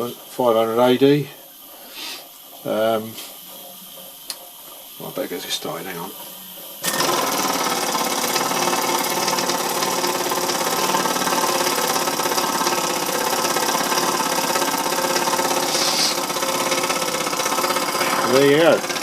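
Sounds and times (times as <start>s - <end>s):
steam hiss: 0.0s - 3.8s, 14.3s - 18.8s
small steam engine running: 0.0s - 19.0s.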